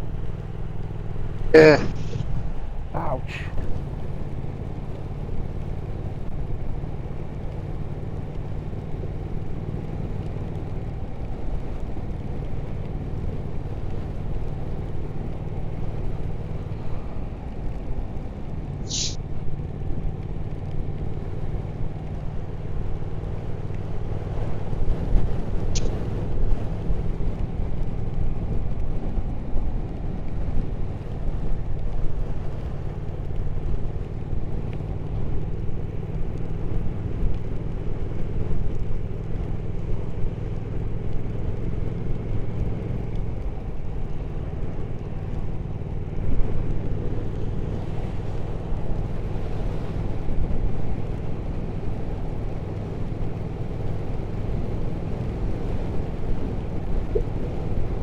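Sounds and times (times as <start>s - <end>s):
wind and road noise: 0.0s - 58.0s
motorcycle engine running: 3.5s - 58.0s.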